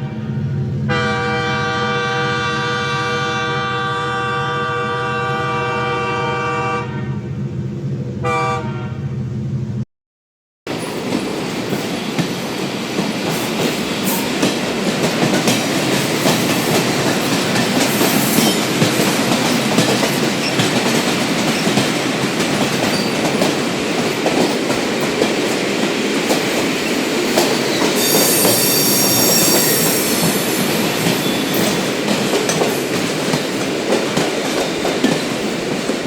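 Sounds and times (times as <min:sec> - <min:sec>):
train rumbling on rails: 0:00.0 - 0:09.8, 0:10.7 - 0:36.0
metallic wheel squeal: 0:27.6 - 0:30.2, 0:31.2 - 0:31.6.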